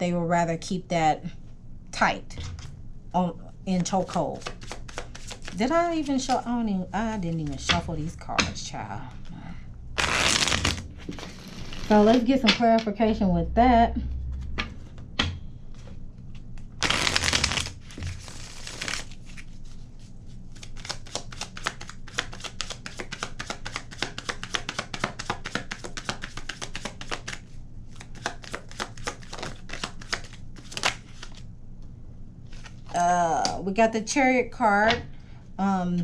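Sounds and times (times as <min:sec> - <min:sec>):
rapid card flicks and taps: 0:04.0 - 0:06.3, 0:20.6 - 0:27.4, 0:28.0 - 0:31.4
cards shuffling swish: 0:04.1 - 0:06.4, 0:10.0 - 0:11.9, 0:16.6 - 0:19.8, 0:20.6 - 0:31.4.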